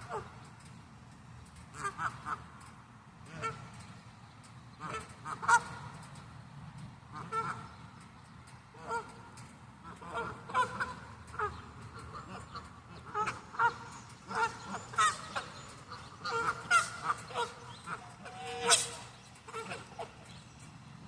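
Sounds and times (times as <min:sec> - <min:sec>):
geese honking: 0:00.0 - 0:00.4, 0:01.7 - 0:02.6, 0:03.2 - 0:03.8, 0:04.8 - 0:06.0, 0:07.1 - 0:07.8, 0:08.7 - 0:20.5.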